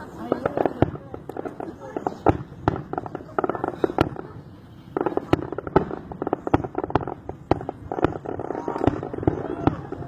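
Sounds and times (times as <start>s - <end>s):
firecrackers cracking and popping: 0.0s - 10.0s.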